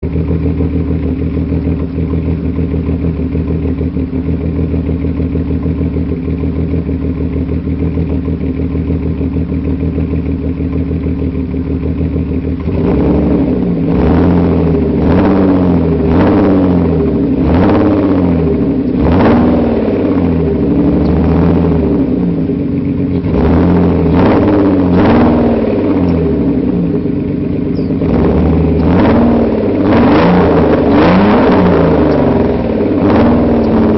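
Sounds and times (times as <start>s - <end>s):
car engine idling and revving: 0.0s - 33.9s.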